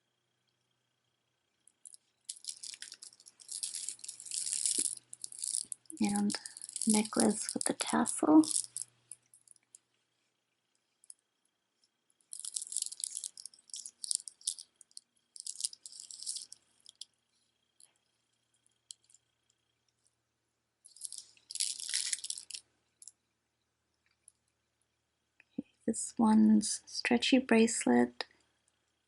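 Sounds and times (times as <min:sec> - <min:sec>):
beads clicking and rattling: 0:01.7 - 0:09.9, 0:12.2 - 0:18.1, 0:18.7 - 0:19.3, 0:20.9 - 0:23.2.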